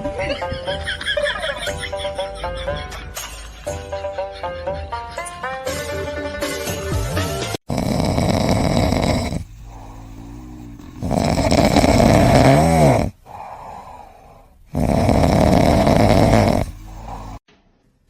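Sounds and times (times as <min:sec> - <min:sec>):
animal snoring loudly: 0:07.7 - 0:17.4
quiet breaths: 0:07.7 - 0:17.4.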